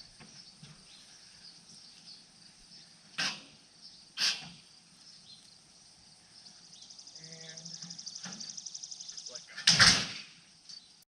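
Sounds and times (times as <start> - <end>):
insect trill: 0.0 - 11.0
metal bangs: 9.6 - 10.4.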